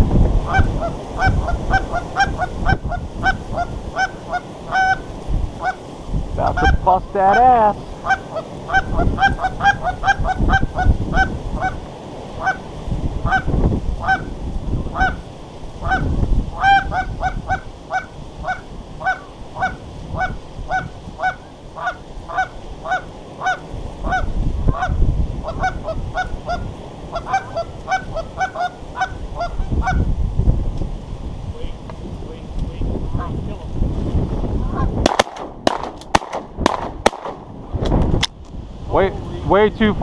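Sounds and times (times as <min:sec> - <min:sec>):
wind buffeting microphone: 0:00.0 - 0:40.0
geese honking: 0:00.4 - 0:11.8, 0:12.4 - 0:30.1.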